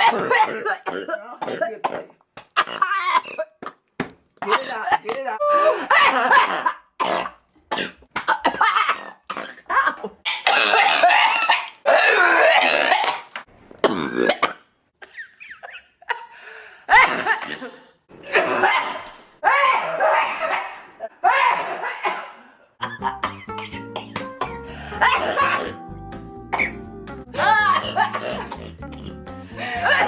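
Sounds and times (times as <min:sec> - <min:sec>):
woman coughing: 0:00.0 - 0:02.2, 0:23.2 - 0:25.8, 0:26.5 - 0:26.8, 0:27.4 - 0:29.1
woman burping: 0:00.0 - 0:03.7, 0:24.8 - 0:25.8, 0:27.4 - 0:30.0.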